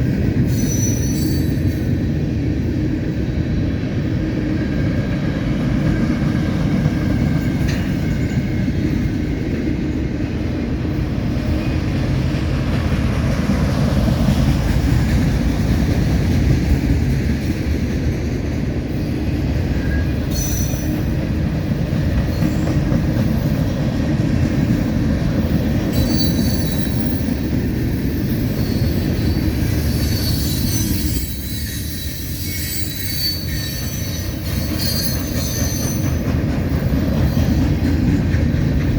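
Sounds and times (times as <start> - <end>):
freight train rumbling on rails: 0.0 - 38.9
high wheel squeals: 0.5 - 2.0, 19.8 - 21.1, 25.9 - 36.4.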